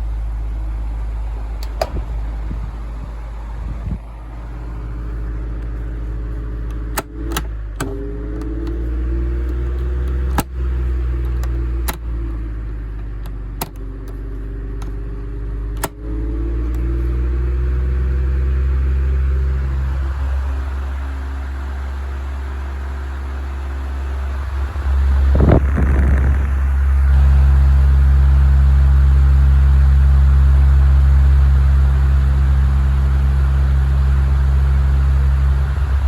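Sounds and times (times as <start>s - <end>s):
fan motor humming: 0.0s - 36.0s
push-button switches clicking: 1.6s - 2.1s, 6.6s - 12.4s, 13.0s - 15.0s, 15.6s - 16.0s.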